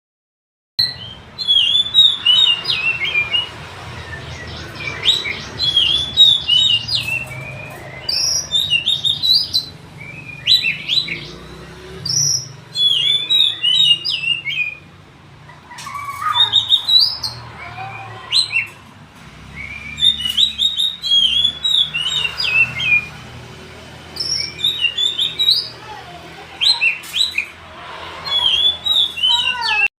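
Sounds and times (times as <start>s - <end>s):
bird singing whistled notes: 0.8s - 14.9s, 15.9s - 17.4s, 19.5s - 23.1s, 24.2s - 25.7s, 28.4s - 29.9s.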